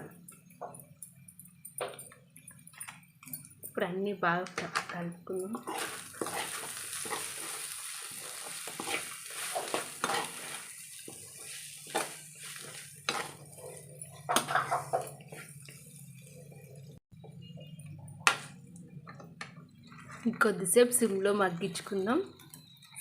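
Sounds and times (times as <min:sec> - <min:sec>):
utensil scraping and clinking on pan: 0:05.6 - 0:07.6, 0:08.4 - 0:15.7.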